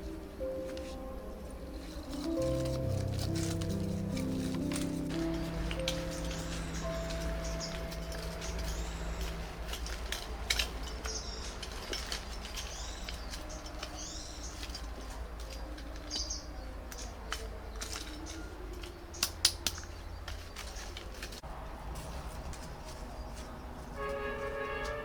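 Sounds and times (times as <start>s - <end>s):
low hum: 0.0s - 11.6s
bird chirps: 0.0s - 20.9s.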